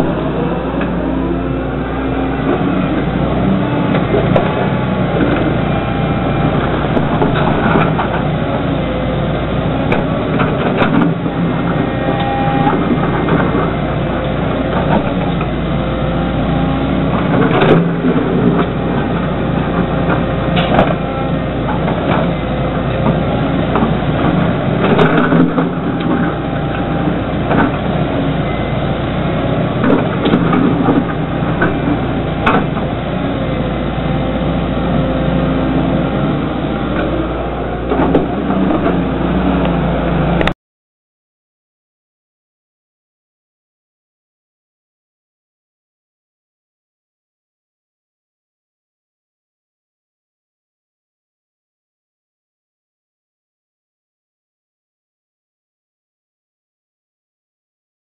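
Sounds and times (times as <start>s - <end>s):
diesel engine running under load: 0.0s - 40.6s
excavator bucket clanking: 6.4s - 8.4s, 9.8s - 15.6s, 17.0s - 34.0s, 34.8s - 40.5s.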